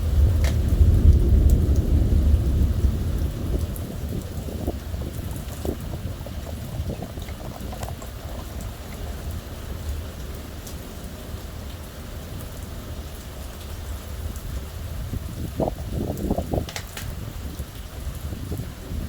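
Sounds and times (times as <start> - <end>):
low thunder rumble: 0.0 - 10.6
steady rain: 0.0 - 19.0
drops ticking close by: 3.6 - 9.6.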